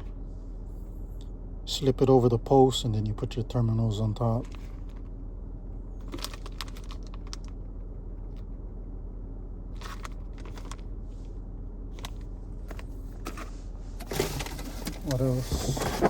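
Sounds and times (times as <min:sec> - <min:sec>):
steady low hum: 0:00.0 - 0:16.0
packaging crinkling and clicking: 0:06.0 - 0:07.5, 0:09.8 - 0:10.8.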